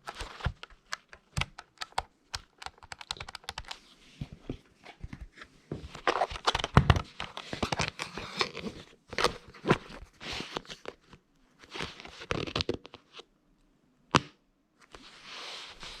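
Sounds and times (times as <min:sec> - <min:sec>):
calculator keys clicking: 0:00.9 - 0:03.8.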